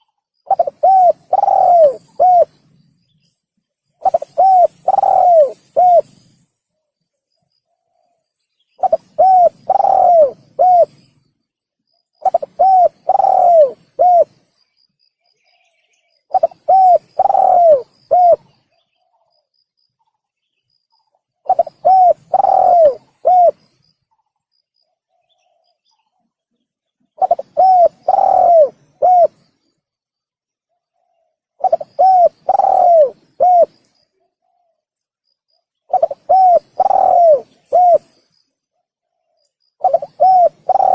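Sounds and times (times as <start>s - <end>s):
dove cooing: 0.0s - 2.6s, 4.0s - 6.3s, 8.8s - 11.0s, 12.2s - 14.4s, 16.3s - 19.3s, 21.4s - 23.7s, 27.2s - 29.4s, 30.9s - 34.8s, 35.9s - 38.2s, 39.8s - 40.9s.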